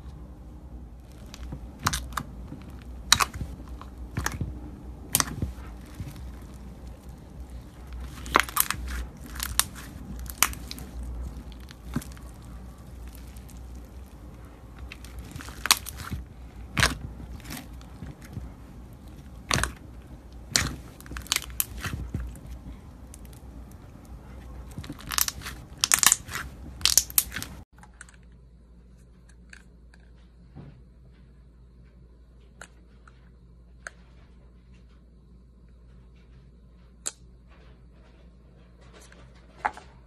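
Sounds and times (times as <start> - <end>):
crunchy slime crackling: 0.9 - 27.6.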